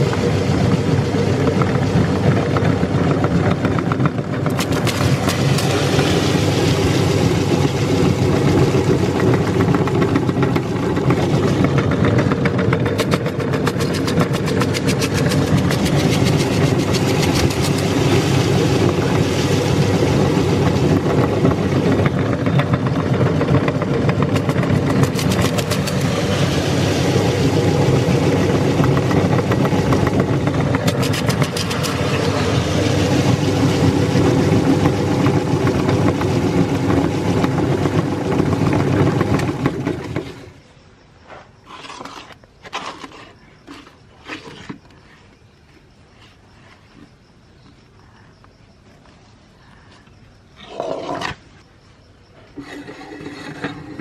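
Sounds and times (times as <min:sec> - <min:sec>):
meat grinder rattling: 0:00.0 - 0:40.6
motor hum: 0:00.0 - 0:40.6.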